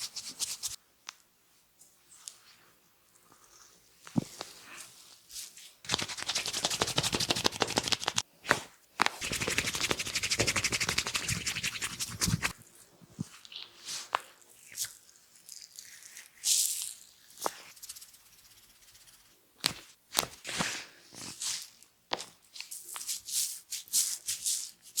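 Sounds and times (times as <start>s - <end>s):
fingers scrubbing lathered scalp: 5.9s - 8.2s, 9.2s - 12.6s.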